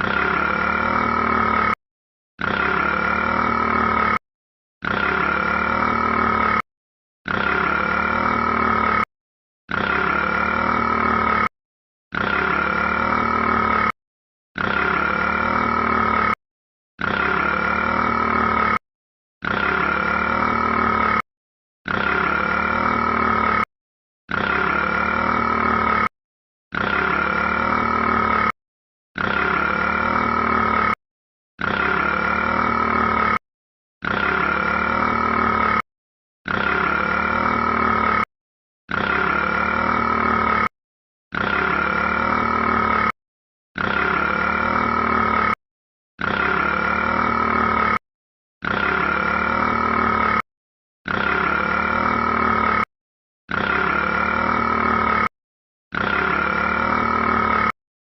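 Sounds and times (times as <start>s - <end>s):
rat burping: 2.4s - 4.2s, 9.7s - 11.5s, 12.1s - 14.0s, 14.6s - 16.4s, 26.7s - 28.6s, 29.2s - 31.0s, 41.3s - 43.2s, 43.8s - 45.6s.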